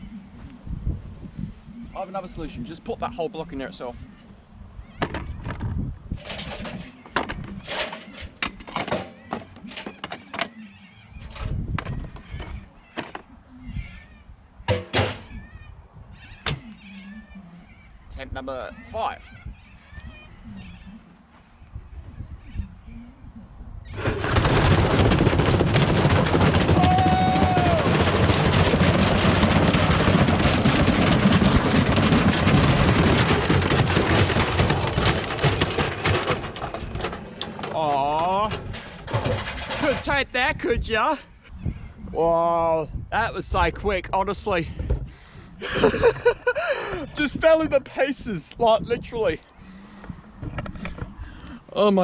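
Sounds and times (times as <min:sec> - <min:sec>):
knocks and clunks: 0:05.0 - 0:10.6, 0:14.7 - 0:15.4, 0:24.0 - 0:40.2
washing machine rumbling and rattling: 0:23.9 - 0:40.5
bricks banging in drum: 0:24.0 - 0:40.1.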